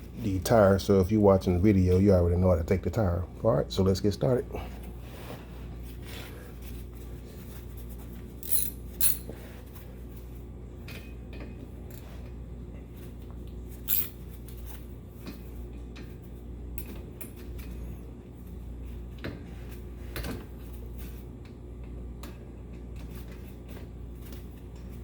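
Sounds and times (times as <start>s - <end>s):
steady low hum: 0.0s - 25.0s
hand tools clinking on metal: 8.4s - 9.3s, 13.9s - 14.1s.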